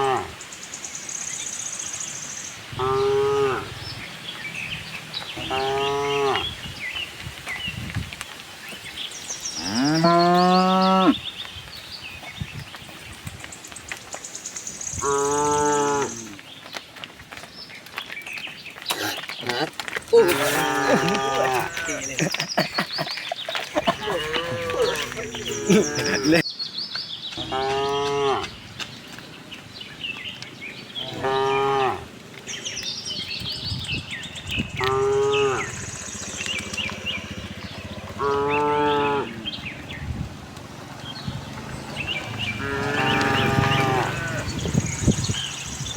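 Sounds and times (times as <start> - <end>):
cows mooing: 0.0 - 0.4, 2.7 - 3.8, 5.4 - 6.6, 9.6 - 11.2, 15.0 - 16.4, 19.0 - 26.4, 27.4 - 28.5, 31.0 - 32.1, 34.8 - 40.0, 40.9 - 44.7
small birds chirping: 0.0 - 45.9.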